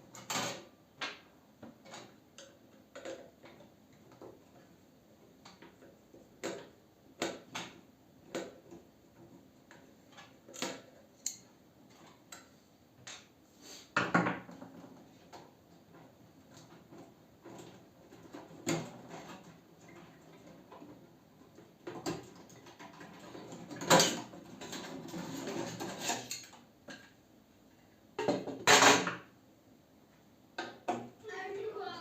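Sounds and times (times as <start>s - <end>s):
tools and metal parts clattering: 22.0s - 26.6s.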